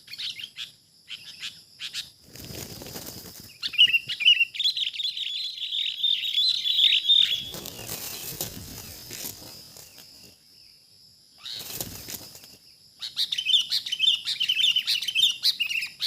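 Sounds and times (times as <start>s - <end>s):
rustling and wing flapping: 2.2s - 3.8s, 7.3s - 10.4s, 11.5s - 12.6s
bird chirping and chattering: 3.6s - 9.0s.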